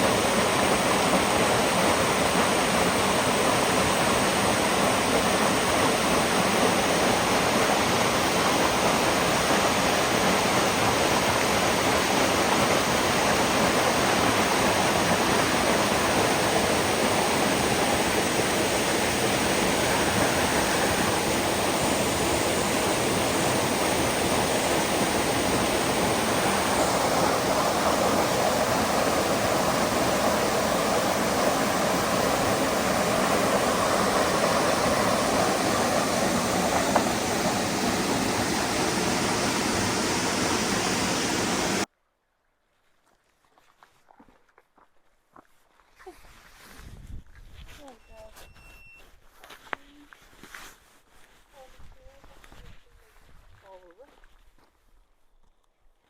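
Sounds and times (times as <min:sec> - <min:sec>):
water pouring over a dam: 0:00.0 - 0:41.9.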